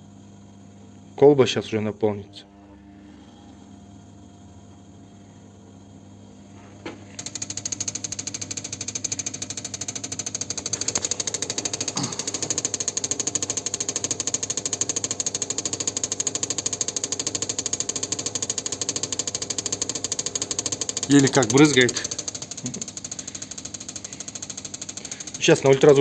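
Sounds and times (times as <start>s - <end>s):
click: 7.1s - 12.7s
fuel injectors ticking rapidly: 7.1s - 26.0s.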